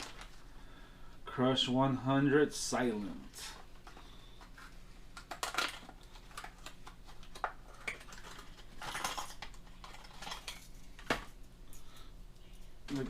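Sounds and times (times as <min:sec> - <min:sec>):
packaging crinkling: 0:03.8 - 0:11.2.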